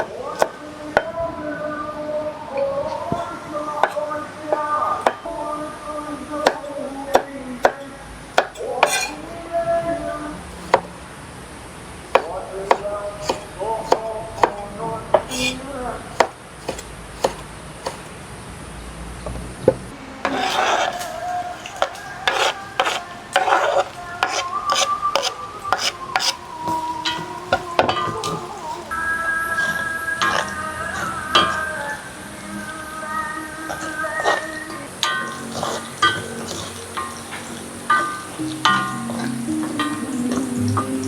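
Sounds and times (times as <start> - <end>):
stirring and scraping: 2.8 - 5.3, 6.4 - 9.4, 12.0 - 18.2, 20.2 - 41.0
utensils clinking against pots: 2.9 - 5.3, 6.4 - 9.2, 12.1 - 18.0, 20.3 - 28.9, 29.5 - 32.2, 33.6 - 41.0.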